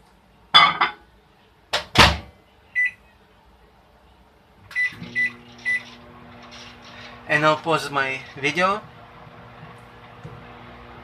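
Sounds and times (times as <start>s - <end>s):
microwave oven humming: 4.6s - 11.0s
keypad beeps: 4.7s - 6.0s.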